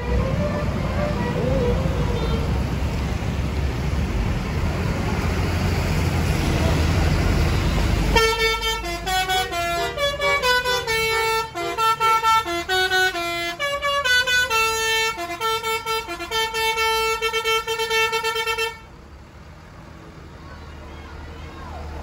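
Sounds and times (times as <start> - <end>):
bus horn playing melody: 0.0 - 2.6, 8.1 - 18.9
loud low vehicle noise: 0.0 - 22.0.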